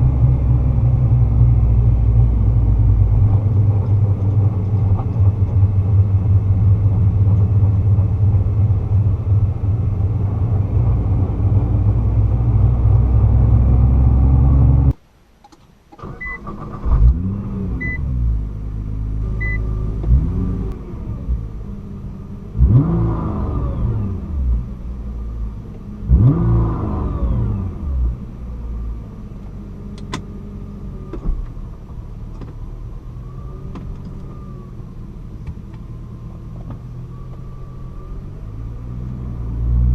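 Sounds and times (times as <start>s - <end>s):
car engine drone in cabin: 0.0s - 39.9s
car engine revving: 16.0s - 39.9s.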